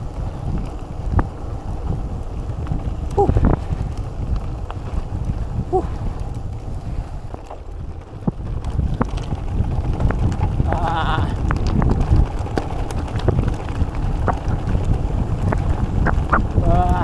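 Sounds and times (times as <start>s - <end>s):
tyres rumbling on gravel: 0.0s - 17.0s
wind on microphone: 0.0s - 17.0s
rattles and knocks from stones: 7.2s - 17.0s.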